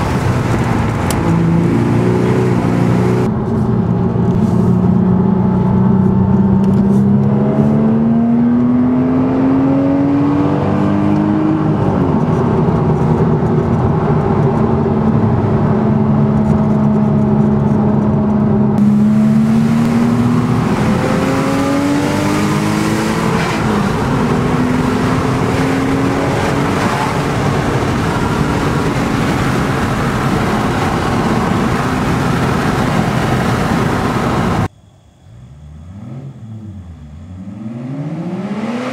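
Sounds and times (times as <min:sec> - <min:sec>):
car engine revving under load: 0:00.0 - 0:34.7, 0:35.3 - 0:38.9
road and wind noise: 0:00.0 - 0:38.9.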